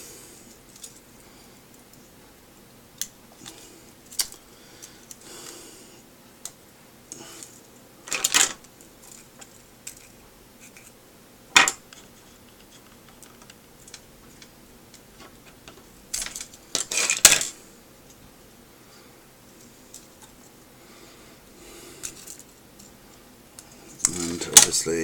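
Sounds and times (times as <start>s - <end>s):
plastic parts clicking and clattering: 8.1s - 10.2s, 11.6s - 14.5s, 15.2s - 17.6s.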